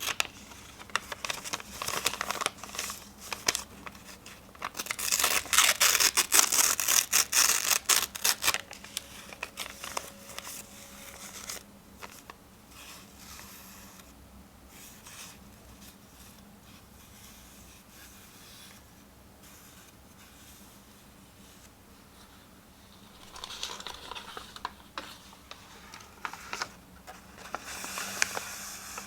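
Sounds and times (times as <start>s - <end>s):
paper rustling: 0.0s - 12.9s, 22.9s - 29.0s
paper ripping: 4.6s - 10.4s, 23.0s - 26.7s.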